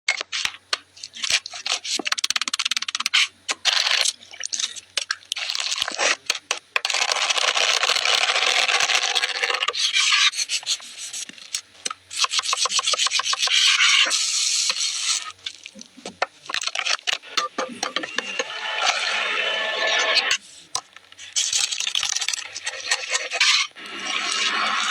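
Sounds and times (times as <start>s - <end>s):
rapid clicks: 0.1s - 19.2s
rough rubbing and scraping: 6.8s - 24.9s.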